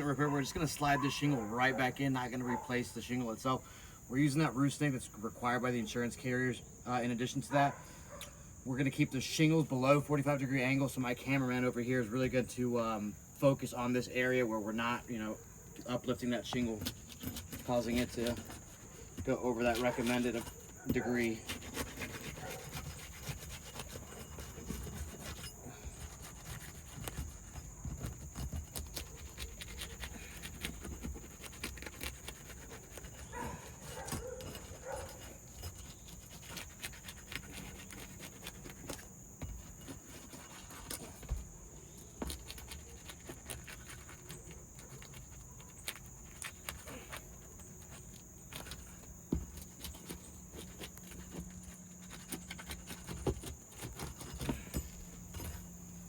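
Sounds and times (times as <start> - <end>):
shingles scraping and clicking: 15.8 - 56.0.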